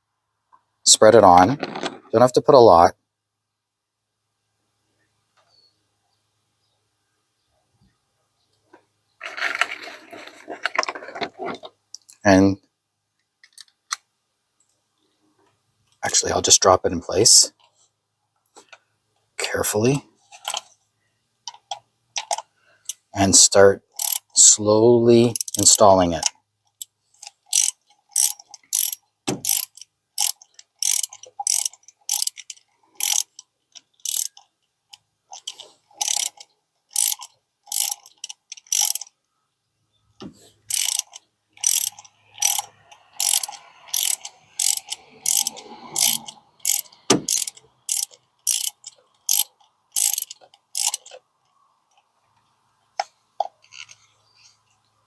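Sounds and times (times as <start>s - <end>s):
ratchet wrench clicking: 21.5s - 23.0s, 23.9s - 24.5s, 25.3s - 39.1s, 40.7s - 51.2s.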